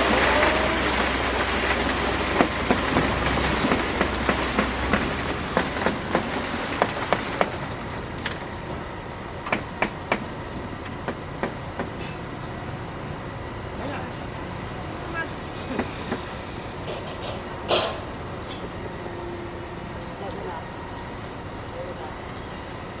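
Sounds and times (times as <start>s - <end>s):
sharp construction knocks: 15.7s - 18.2s.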